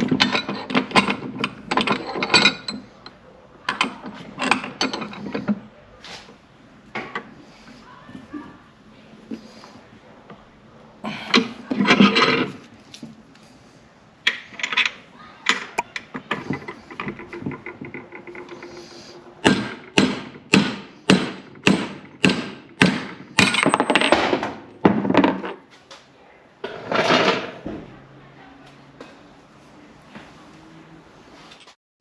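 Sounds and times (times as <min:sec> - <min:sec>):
hammer striking metal: 0:19.4 - 0:23.7.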